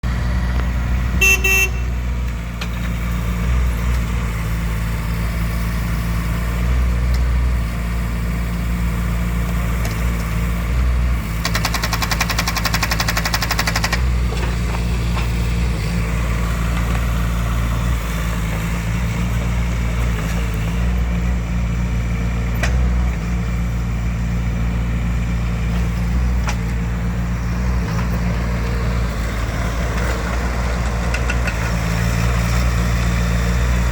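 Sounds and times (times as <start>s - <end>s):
excavator diesel engine idling: 0.0s - 7.0s, 7.6s - 33.9s
short beep: 1.2s - 2.1s.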